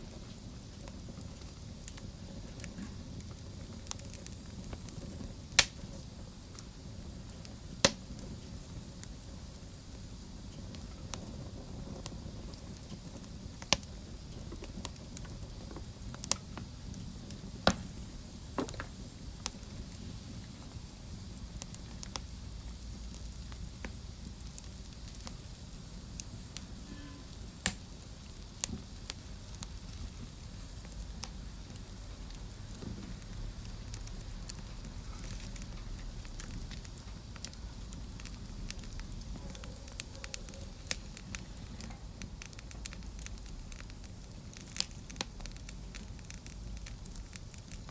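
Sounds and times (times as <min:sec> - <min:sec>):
sharp pops and snaps of fire: 0:00.0 - 0:47.9
wood fire crackling: 0:00.0 - 0:47.9.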